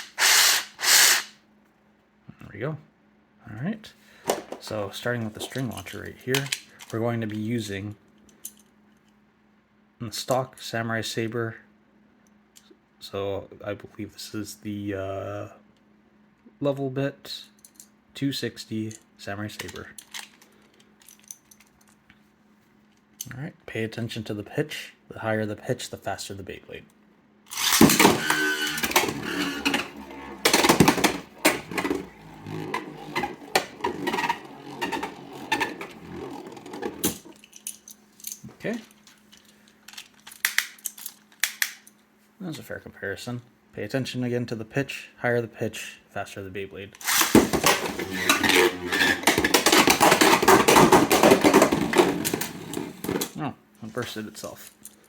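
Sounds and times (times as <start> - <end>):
spinning top whirring: 0.0 - 1.4, 27.5 - 37.4, 47.0 - 53.2
top clattering against plastic: 27.8 - 37.4, 47.0 - 53.3.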